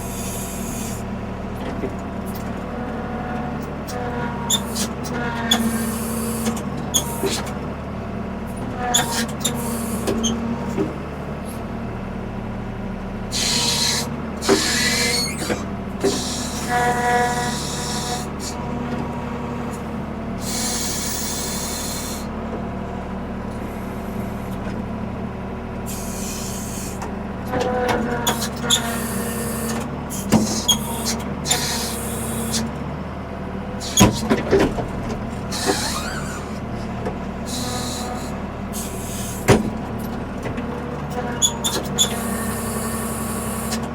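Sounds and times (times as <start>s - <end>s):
diesel engine running: 0.0s - 43.9s
brief squeal: 13.3s - 18.5s, 20.4s - 22.2s, 25.9s - 27.0s, 35.5s - 36.6s, 37.5s - 39.4s
hydraulic hiss bursts: 13.4s - 15.6s, 35.5s - 36.6s, 37.5s - 39.5s.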